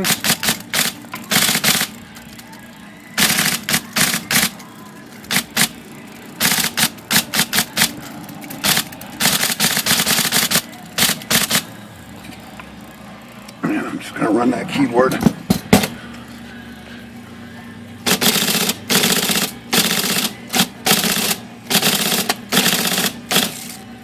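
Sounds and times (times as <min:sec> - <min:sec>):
electric typewriter clattering: 0:00.0 - 0:02.4, 0:03.2 - 0:05.8, 0:06.4 - 0:11.7, 0:18.1 - 0:23.8.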